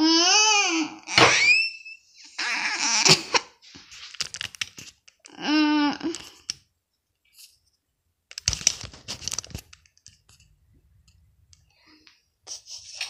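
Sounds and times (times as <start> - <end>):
objects clicking and crinkling on table: 3.9 - 5.4, 8.3 - 11.7.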